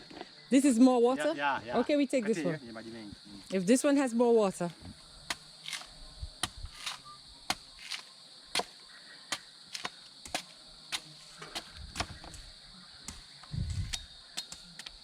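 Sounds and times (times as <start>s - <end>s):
crickets chirring: 0.0s - 15.0s
machete chopping coconut: 5.3s - 12.3s.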